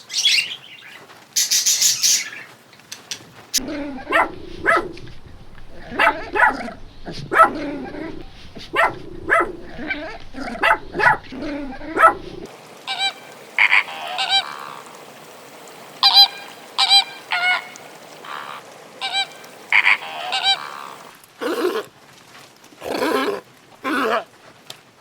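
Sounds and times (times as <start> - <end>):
dog barking: 3.6 - 12.5
long rough sounds: 3.6 - 12.9
geese honking: 3.6 - 21.1.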